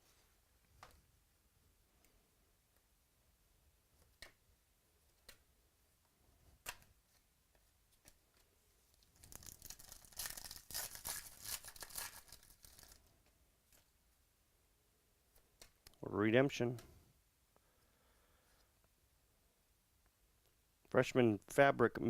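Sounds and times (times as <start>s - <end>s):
wrapper tearing and crinkling: 9.2s - 13.0s.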